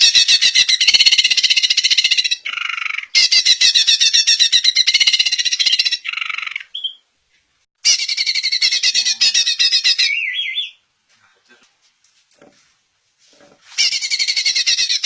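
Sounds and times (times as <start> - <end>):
harsh bird call: 7.8 - 10.8.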